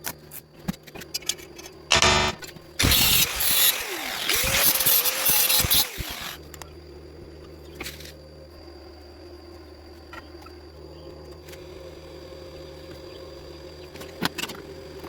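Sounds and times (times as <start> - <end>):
welding arc crackling and hissing: 1.9 - 6.4.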